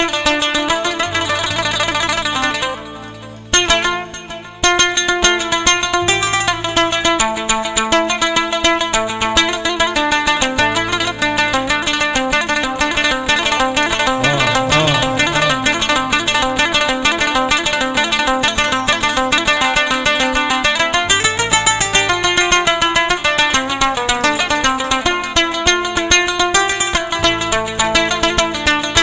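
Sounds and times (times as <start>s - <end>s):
fast plucked-string melody: 0.0s - 29.0s.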